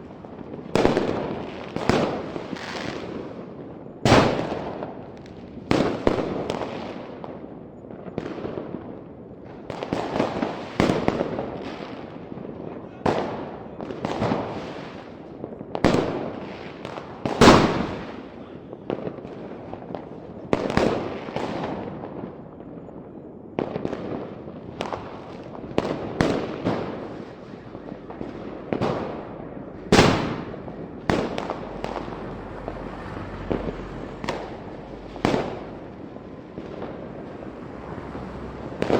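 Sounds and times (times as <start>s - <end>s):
fireworks bangs: 0.0s - 3.4s, 4.0s - 7.4s, 13.1s - 38.9s
fireworks crackle: 23.6s - 38.9s.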